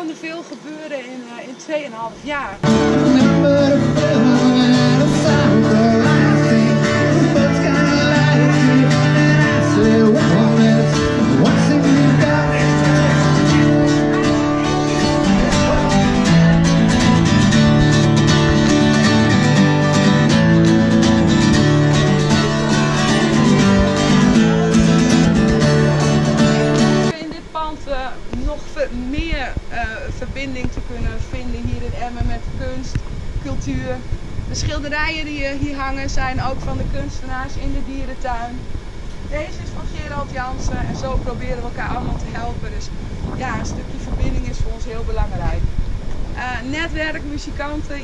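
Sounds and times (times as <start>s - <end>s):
country music with guitar: 2.6s - 27.2s.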